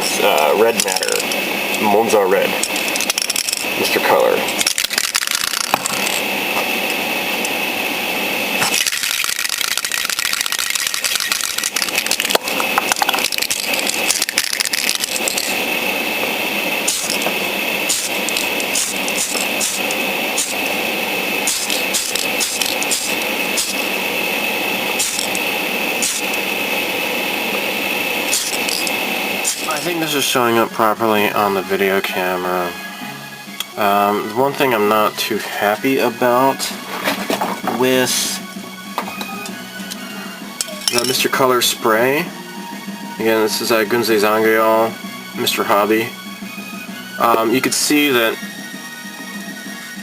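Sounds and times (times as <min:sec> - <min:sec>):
clicks and rattles: 0:02.6 - 0:03.7
aerosol spray can hissing: 0:08.6 - 0:30.1.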